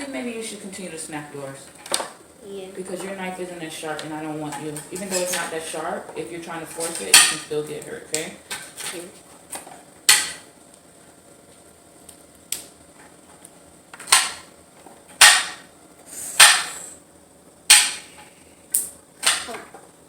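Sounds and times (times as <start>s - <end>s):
knife chopping on glass board: 16.4s - 16.8s, 17.7s - 18.1s.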